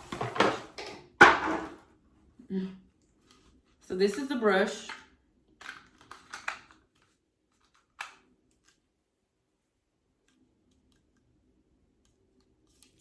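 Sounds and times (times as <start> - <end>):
plastic handling clicks: 4.8 - 8.8.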